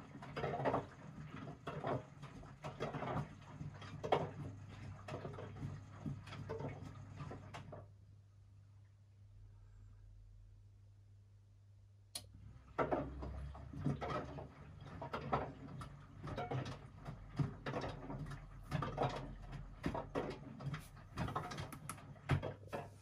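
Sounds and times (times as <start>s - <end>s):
washing machine clicking and knocking: 0.0s - 7.9s, 12.6s - 23.0s.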